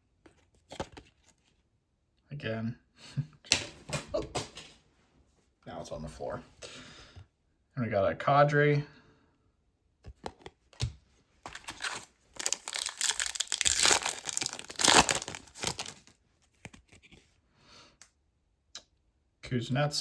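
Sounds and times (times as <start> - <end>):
wrapper tearing and crinkling: 11.5 - 16.2.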